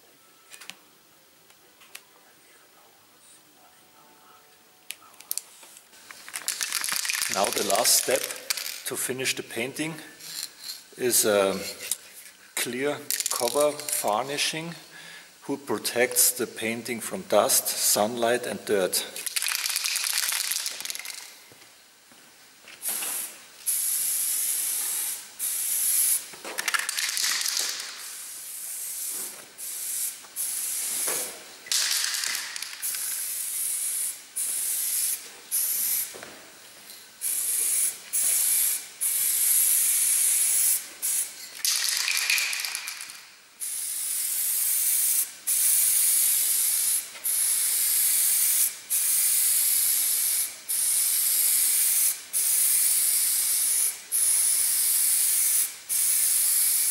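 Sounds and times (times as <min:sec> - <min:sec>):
spray can hissing bursts: 0:06.0 - 0:08.9, 0:10.2 - 0:12.1, 0:19.1 - 0:21.4, 0:22.8 - 0:36.2, 0:37.2 - 0:56.9.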